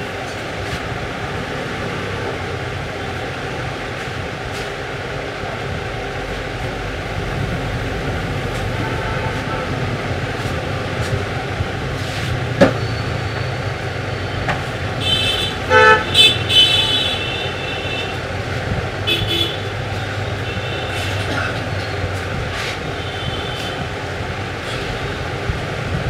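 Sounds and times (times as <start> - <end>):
low traffic rumble: 0.0 - 26.0
vehicle horns tooting: 8.7 - 9.8, 15.0 - 18.3, 19.0 - 22.0, 22.8 - 24.0.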